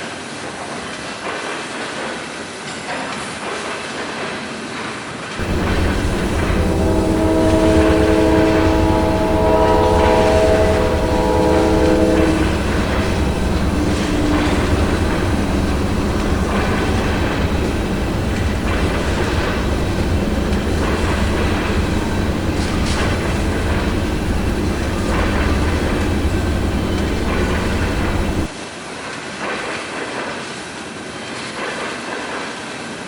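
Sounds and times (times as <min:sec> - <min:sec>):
train horn: 0:05.4 - 0:28.5
train wheels rumbling on rails: 0:05.4 - 0:28.5.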